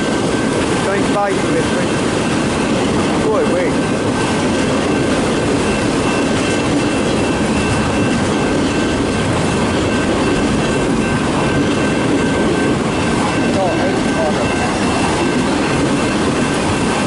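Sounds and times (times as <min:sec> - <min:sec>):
train wheels rumbling on rail: 0:00.0 - 0:17.0.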